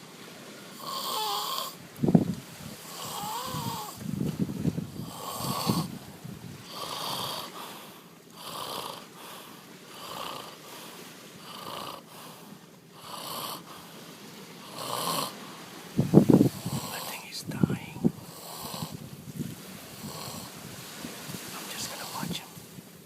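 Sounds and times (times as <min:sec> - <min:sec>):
man snoring: 0:00.8 - 0:01.8, 0:02.9 - 0:04.0, 0:05.0 - 0:06.0, 0:06.7 - 0:07.6, 0:08.4 - 0:09.2, 0:10.0 - 0:10.6, 0:11.4 - 0:12.1, 0:13.0 - 0:13.7, 0:14.6 - 0:15.4, 0:16.5 - 0:17.3, 0:18.2 - 0:19.0, 0:20.0 - 0:20.5.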